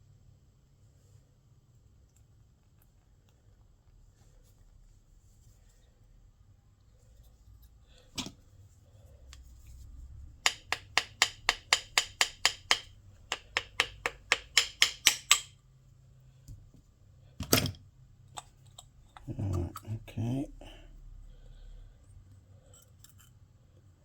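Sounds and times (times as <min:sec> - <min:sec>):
hand tool rapid clicks: 0:10.5 - 0:15.5.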